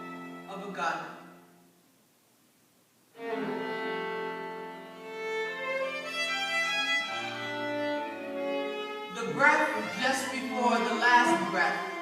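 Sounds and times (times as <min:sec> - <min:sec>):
string quartet playing bowed chords: 0:00.0 - 0:01.5, 0:03.2 - 0:12.0
low cello note: 0:03.2 - 0:06.0.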